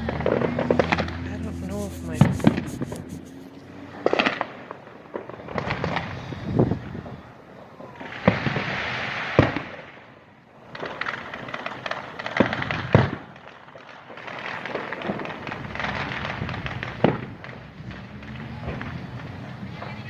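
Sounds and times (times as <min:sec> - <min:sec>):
firework crackling: 0:00.0 - 0:06.4, 0:10.6 - 0:20.0
firework bangs: 0:10.7 - 0:20.0.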